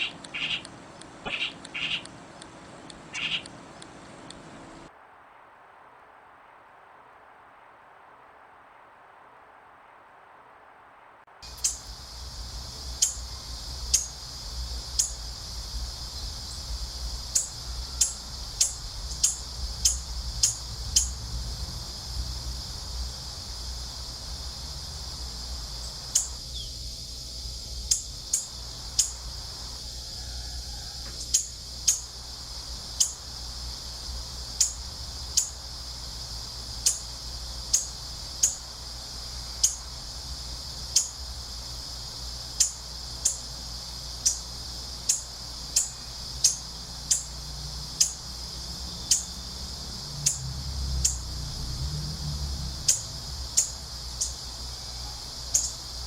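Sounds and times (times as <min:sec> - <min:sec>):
short sharp bird chirps: 0:00.0 - 0:02.1, 0:03.2 - 0:03.5
wind rumbling low: 0:11.4 - 0:30.8.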